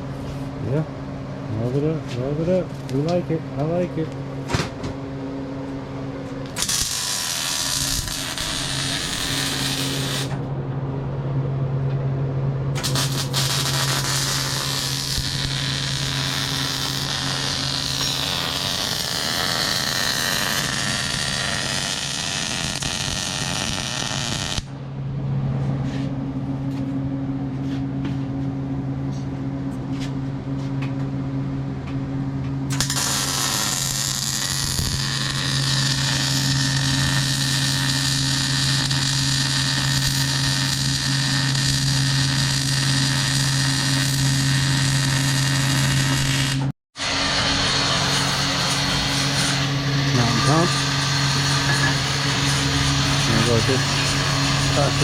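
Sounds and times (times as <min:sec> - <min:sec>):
low hum: 0:00.0 - 0:55.0
power tool grinding steel: 0:12.8 - 0:24.6, 0:32.8 - 0:55.0.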